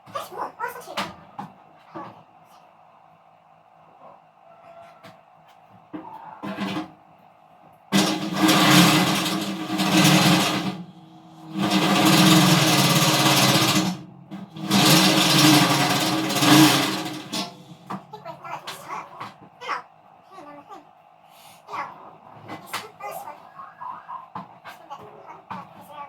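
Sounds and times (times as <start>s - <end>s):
electric drill drilling metal: 8.0s - 18.0s.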